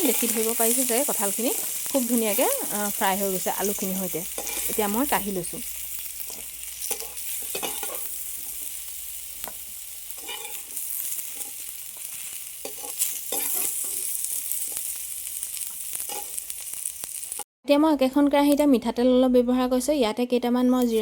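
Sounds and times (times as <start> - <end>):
food sizzling in hot oil: 0.0 - 17.5
spatula scraping a pan: 4.3 - 4.8, 6.3 - 8.7, 10.1 - 14.9, 15.7 - 16.4.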